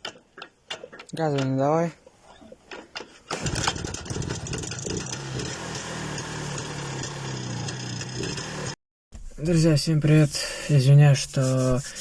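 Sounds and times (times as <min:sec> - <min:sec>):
engine starting clicks and knocks: 0:02.7 - 0:08.5
motorcycle engine idling: 0:03.4 - 0:08.8.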